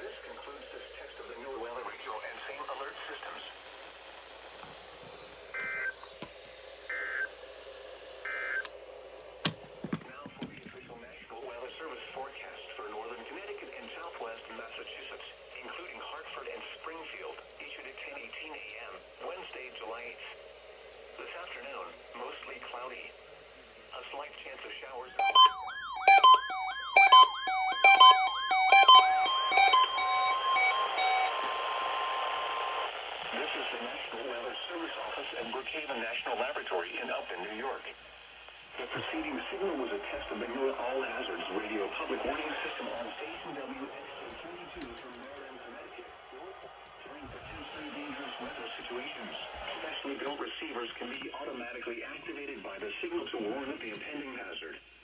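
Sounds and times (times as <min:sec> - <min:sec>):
radio hiss: 0:00.0 - 0:06.3, 0:11.1 - 0:54.9
warbling electronic alert sweeps: 0:25.1 - 0:31.5
two-tone data bursts: 0:25.1 - 0:32.9.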